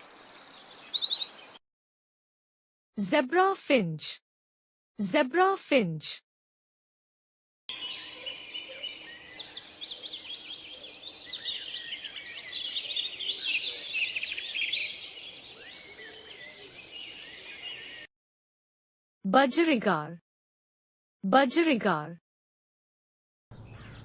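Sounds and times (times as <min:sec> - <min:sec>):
finches calling: 0:00.0 - 0:01.6, 0:07.7 - 0:18.1.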